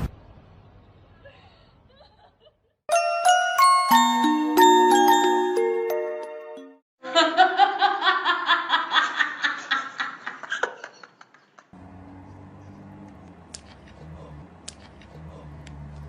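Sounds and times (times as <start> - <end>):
person laughing: 1.3 - 2.7.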